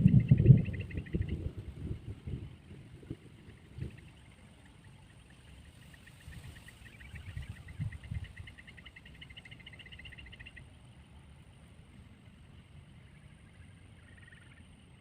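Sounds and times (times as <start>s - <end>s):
insect chirping: 0.0s - 15.0s
low background hum: 0.0s - 15.0s.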